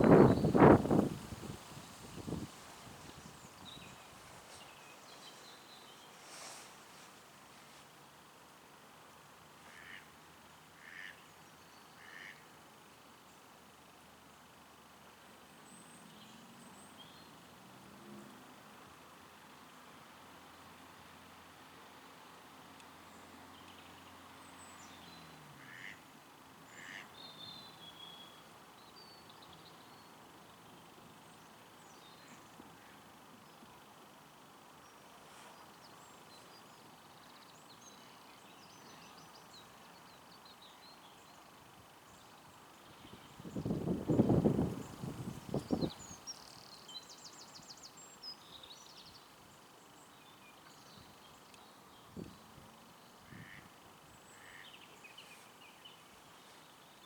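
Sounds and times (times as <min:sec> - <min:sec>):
small songbirds chirping: 0:00.0 - 0:06.6, 0:26.8 - 0:33.8, 0:34.7 - 0:57.0
soft low rustles: 0:00.0 - 0:08.0
faint outdoor hush: 0:00.0 - 0:11.1, 0:25.4 - 0:48.2.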